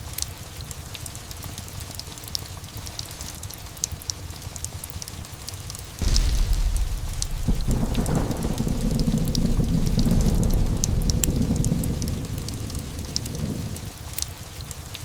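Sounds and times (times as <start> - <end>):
steady rain: 0.0 - 15.0
thunder rumbling: 6.0 - 14.1
fireplace crackling: 6.0 - 14.2.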